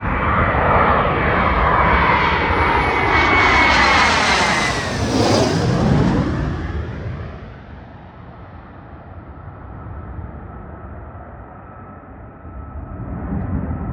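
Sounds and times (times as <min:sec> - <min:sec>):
fighter jet passing overhead: 0:00.0 - 0:13.9.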